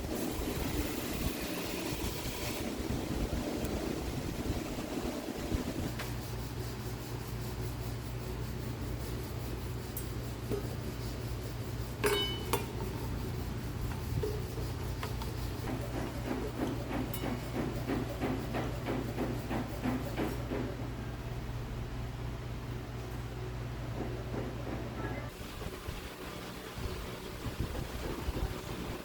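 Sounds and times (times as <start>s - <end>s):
steady machine hum: 0.0s - 29.0s
metal being filed: 6.1s - 20.7s
sharp metal clink: 12.0s - 12.9s.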